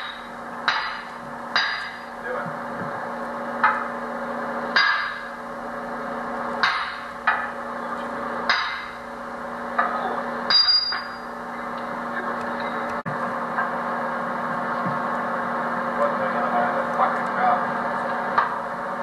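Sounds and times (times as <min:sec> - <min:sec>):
hammer striking metal: 0:00.0 - 0:02.1, 0:04.7 - 0:05.3, 0:06.6 - 0:07.6, 0:08.5 - 0:09.0, 0:09.8 - 0:11.4
steady machine hum: 0:00.0 - 0:19.0.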